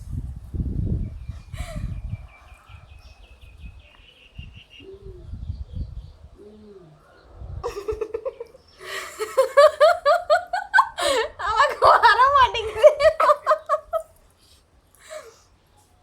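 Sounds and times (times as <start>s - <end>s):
faint bird chirping: 1.0s - 9.6s
dove-like cooing: 4.8s - 8.6s
person giggling: 7.6s - 14.1s.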